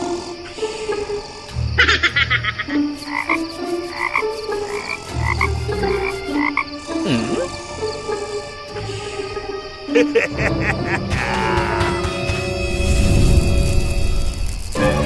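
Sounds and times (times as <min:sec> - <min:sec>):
frog croaking: 0:01.7 - 0:08.6.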